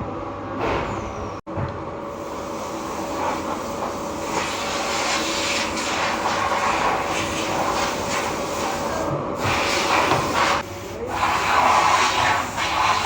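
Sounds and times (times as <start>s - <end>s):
machinery hum and hiss: 0.0s - 13.0s.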